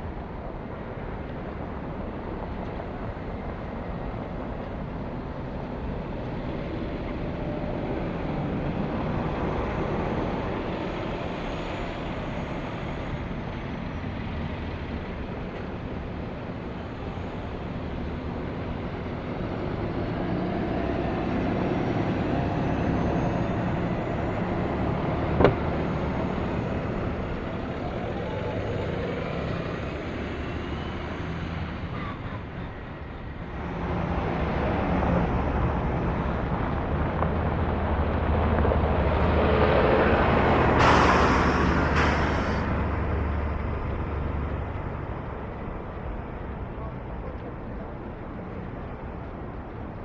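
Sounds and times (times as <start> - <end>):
passing cars and trucks: 0.0 - 50.0
vehicle hiss: 40.7 - 42.9.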